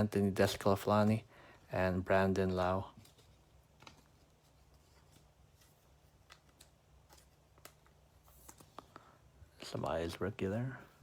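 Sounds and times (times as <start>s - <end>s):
trading cards clicking and rustling: 2.4s - 10.6s.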